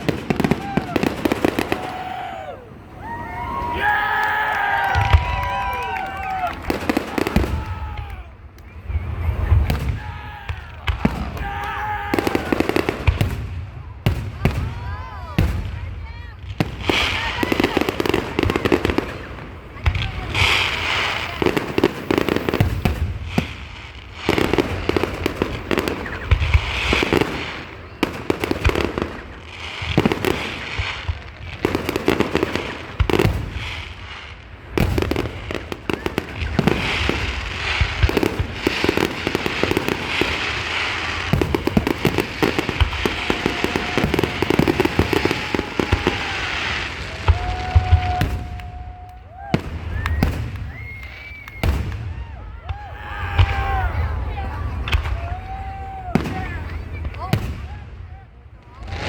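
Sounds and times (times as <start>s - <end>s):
fireworks booms and crackling: 0.0s - 59.0s
whistle-like tone: 49.9s - 51.7s.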